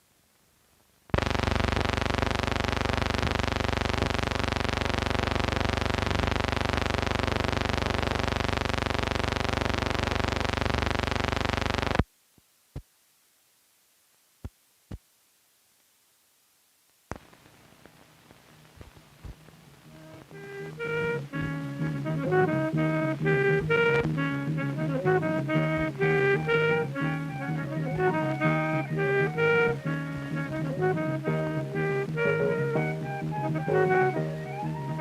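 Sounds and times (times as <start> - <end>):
faint hiss: 0.0 - 35.0
steady buzzing hum: 1.1 - 12.0, 17.1 - 35.0
sharp clicks and pops: 1.1 - 12.1, 17.1 - 22.5.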